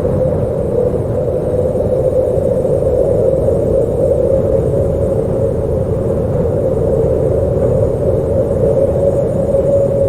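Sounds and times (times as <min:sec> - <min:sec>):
howling wind: 0:00.0 - 0:10.0.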